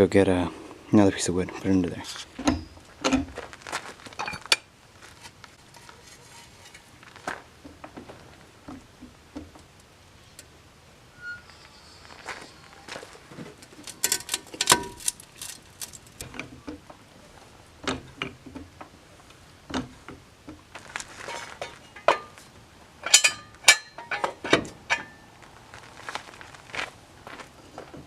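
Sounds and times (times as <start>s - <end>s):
metal jack stand clanking: 5.2s - 7.0s, 13.6s - 16.5s, 21.2s - 22.4s, 23.0s - 25.3s.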